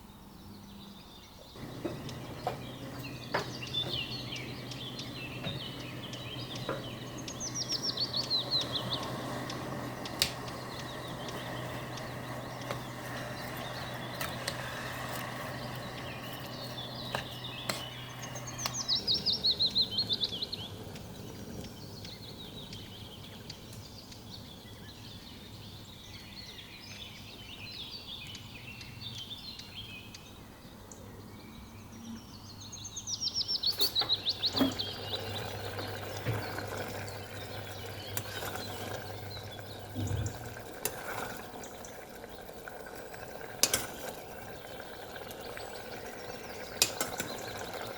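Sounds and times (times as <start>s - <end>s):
steady low hum: 1.6s - 23.2s
songbird trilling: 1.6s - 23.7s.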